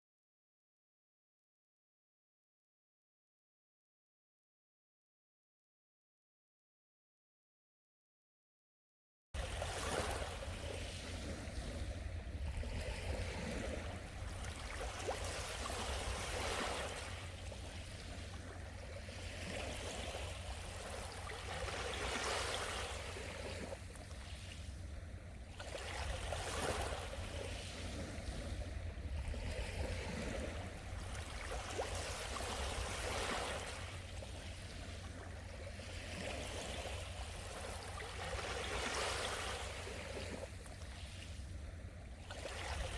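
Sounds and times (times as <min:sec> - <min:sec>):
sea waves washing in: 0:09.4 - 0:42.9.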